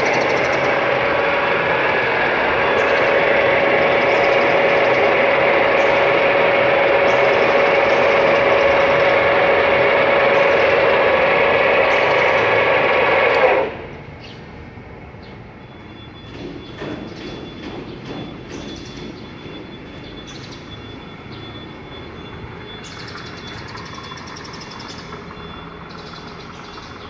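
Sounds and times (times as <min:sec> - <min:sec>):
metal lathe whining: 0:00.0 - 0:14.8.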